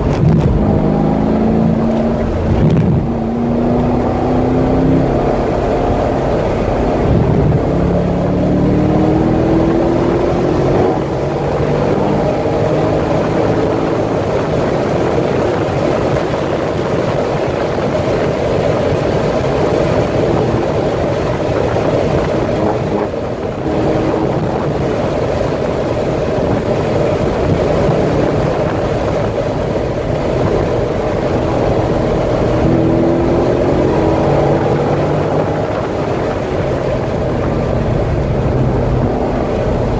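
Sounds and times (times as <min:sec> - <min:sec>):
car engine running hard: 0:00.0 - 0:39.9
wind and road noise: 0:00.0 - 0:39.9.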